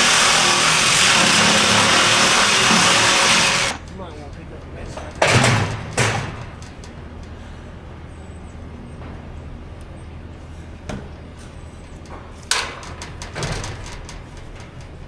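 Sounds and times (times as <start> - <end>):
engine humming: 0.0 - 5.0.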